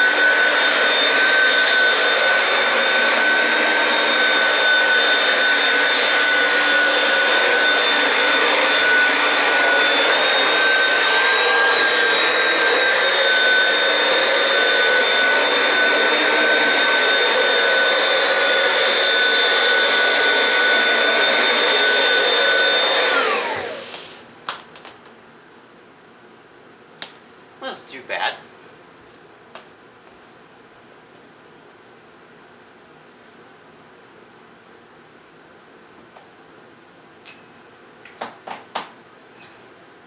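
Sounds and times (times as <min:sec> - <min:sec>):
vacuum cleaner running: 0:00.0 - 0:24.3.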